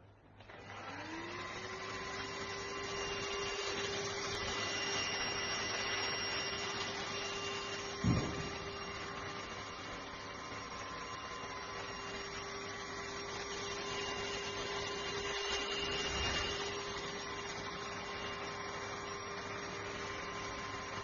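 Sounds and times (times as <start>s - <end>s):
handheld vacuum cleaner whine: 0.0s - 21.0s
dull thump: 8.0s - 8.8s.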